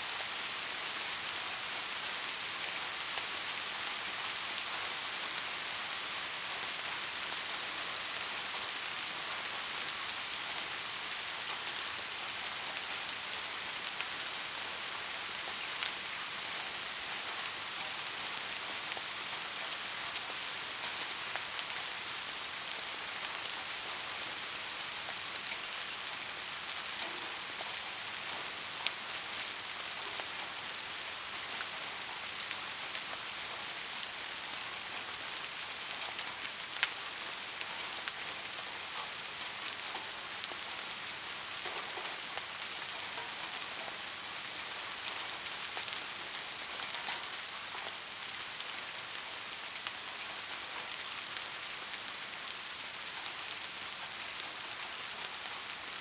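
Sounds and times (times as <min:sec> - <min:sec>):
soft rain falling: 0:00.0 - 0:56.0.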